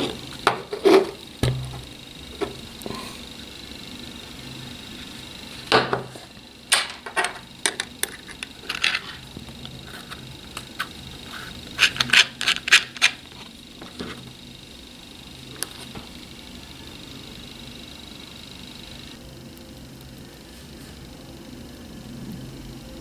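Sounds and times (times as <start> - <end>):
plastic parts clicking and scraping: 6.0 - 14.4.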